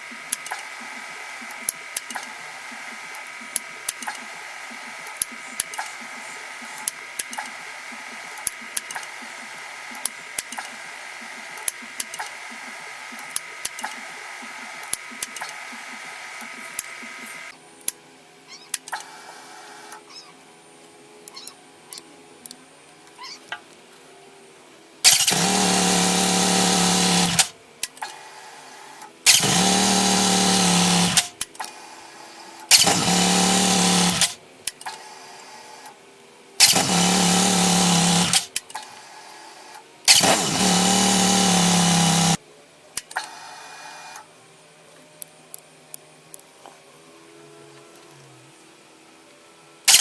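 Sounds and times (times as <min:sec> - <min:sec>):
small clicks: 0:00.3 - 0:17.4
motorcycle engine starting and running: 0:25.1 - 0:27.6, 0:29.3 - 0:31.4, 0:32.7 - 0:34.4, 0:36.6 - 0:38.6, 0:40.1 - 0:42.4.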